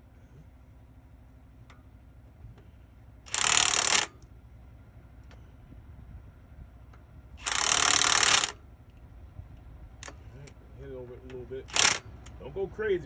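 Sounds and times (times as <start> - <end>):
impact wrench hammering: 3.3 - 4.2, 11.7 - 12.0.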